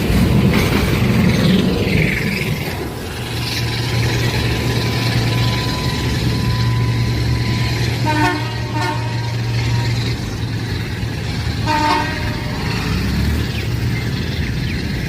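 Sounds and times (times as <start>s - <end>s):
diesel locomotive engine drone: 0.0s - 15.0s
locomotive horn: 6.6s - 10.3s, 11.5s - 13.0s.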